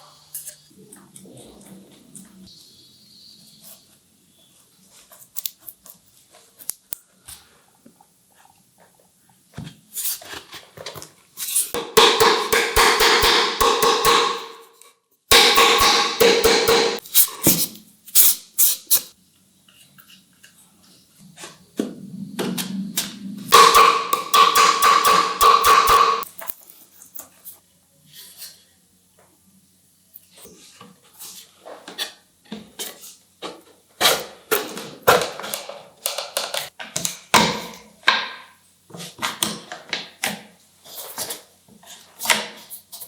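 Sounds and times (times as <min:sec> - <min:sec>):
wood piece ringing: 0:11.8 - 0:14.7, 0:15.3 - 0:17.0, 0:23.5 - 0:26.2
rapid sharp tool strokes on wood: 0:12.0 - 0:14.6, 0:15.3 - 0:17.7, 0:23.5 - 0:26.2.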